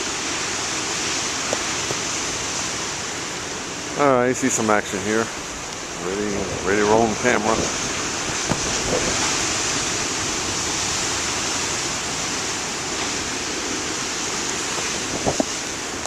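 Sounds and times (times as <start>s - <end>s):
storm surf breaking: 0.0s - 16.0s.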